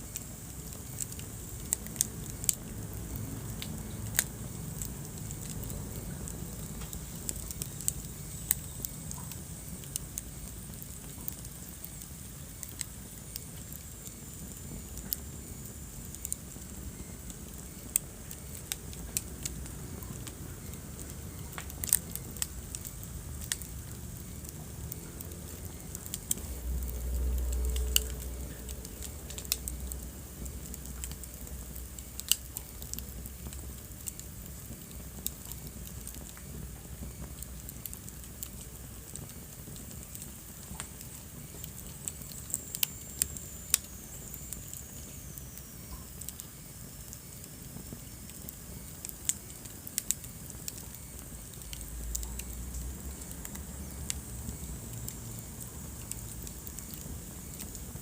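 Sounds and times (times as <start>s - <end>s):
low fire rumble: 0.0s - 58.0s
wood fire crackling: 0.0s - 58.0s.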